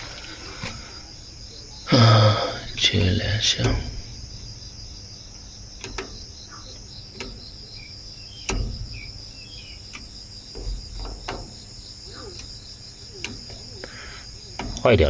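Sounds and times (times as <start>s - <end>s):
insects trilling: 0.0s - 15.0s
sharp clicks and knocks: 3.5s - 4.1s, 5.8s - 12.6s, 14.5s - 14.9s.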